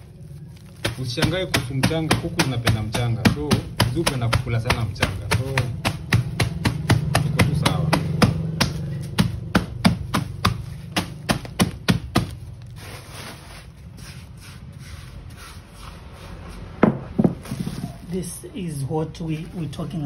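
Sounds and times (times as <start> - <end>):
charcoal grinding: 0.0 - 20.0
charcoal being pounded: 0.6 - 14.2, 16.8 - 18.0.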